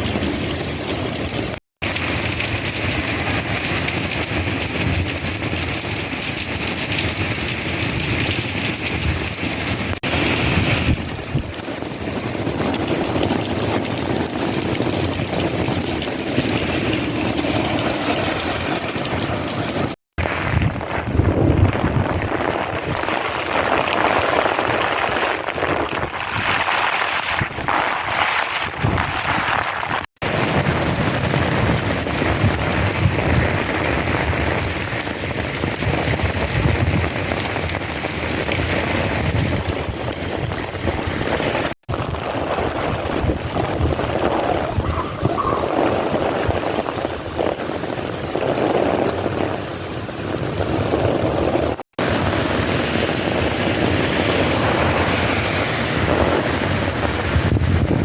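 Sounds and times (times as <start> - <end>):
heavy rain pouring: 0.0 - 58.0
wind rumbling on microphone: 0.0 - 58.0.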